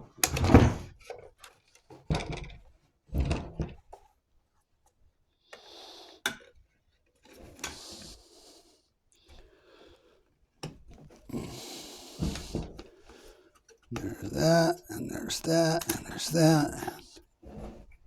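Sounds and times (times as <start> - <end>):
sliding and rubbing noises: 15.4 - 18.0.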